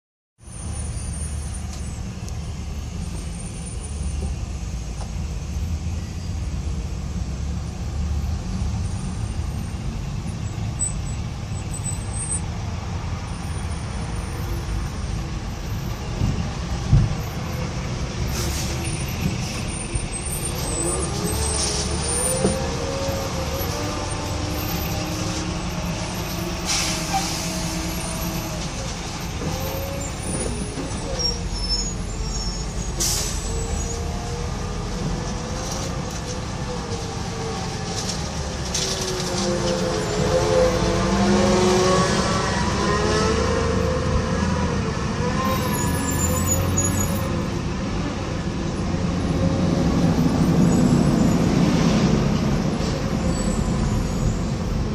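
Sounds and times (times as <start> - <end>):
rumble of tyres and engines: 0.4 - 54.9
engine whine: 33.0 - 45.8.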